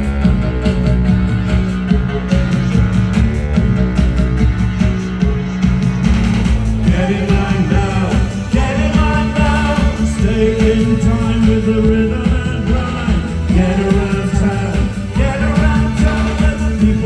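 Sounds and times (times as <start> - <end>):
synth-pop band playing: 0.0 - 17.0
lead singer: 6.5 - 17.0.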